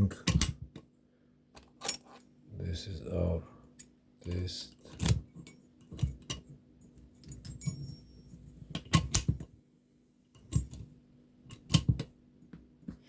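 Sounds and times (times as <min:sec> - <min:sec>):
padlock clicking and rattling: 0:04.9 - 0:08.0, 0:08.7 - 0:09.5, 0:11.5 - 0:12.1.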